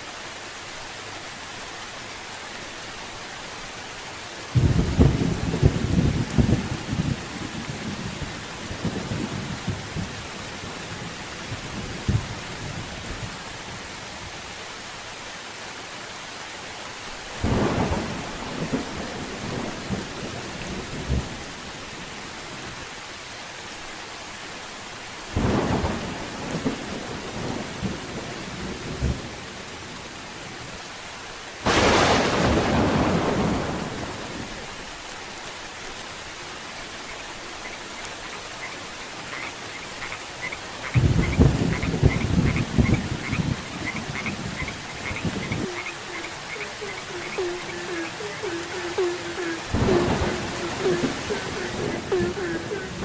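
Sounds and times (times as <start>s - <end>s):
steady rain: 0.0s - 53.0s
thunder rumbling: 31.7s - 34.6s, 40.9s - 53.0s.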